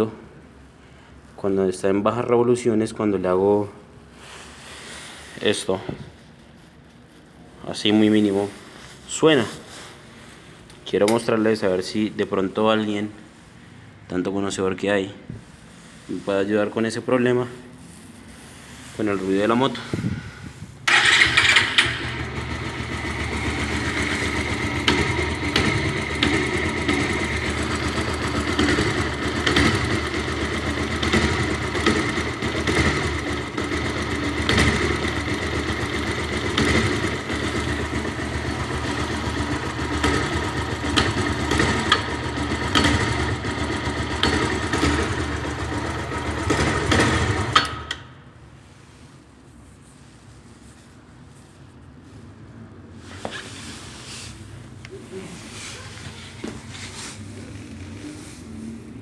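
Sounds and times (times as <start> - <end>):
sharp irregular engine clicks: 20.9 - 48.1
motorcycle engine at low revs: 20.9 - 48.2.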